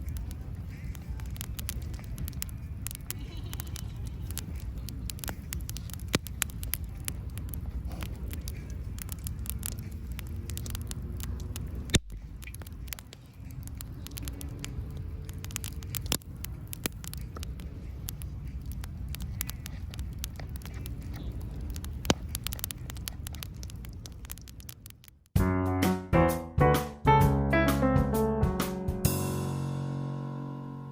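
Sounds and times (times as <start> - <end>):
campfire crackling and popping: 0.0 - 27.0
steady low rumble: 0.0 - 30.9.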